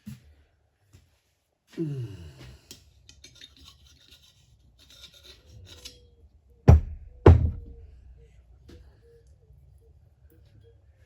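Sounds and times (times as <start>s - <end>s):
metal parts scraping: 3.2s - 6.0s
sharp knocks: 6.7s - 7.8s.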